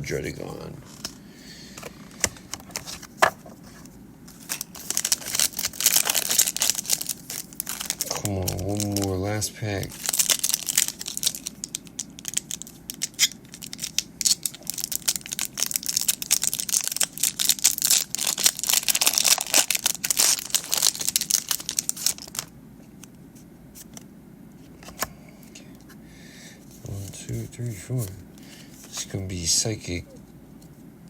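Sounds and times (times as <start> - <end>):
foil wrapper crinkling and tearing: 4.3 - 22.5.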